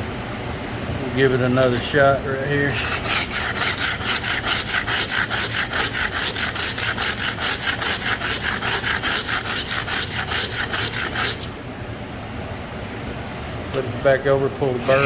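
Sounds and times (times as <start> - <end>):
metal blade scraping on concrete: 2.6 - 11.6, 14.8 - 15.0.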